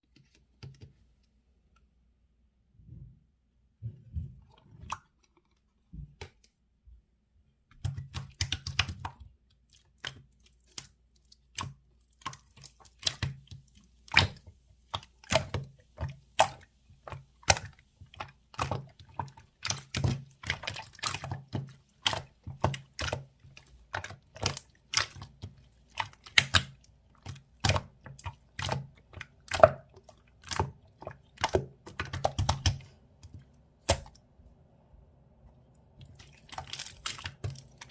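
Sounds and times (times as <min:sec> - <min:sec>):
slime clicking and popping: 0:31.4 - 0:32.9.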